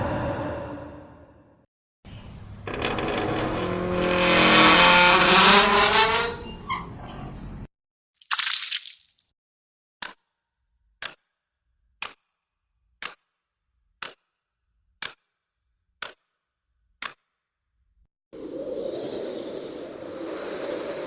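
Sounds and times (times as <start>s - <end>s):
steady whooshing noise: 0.0s - 1.4s.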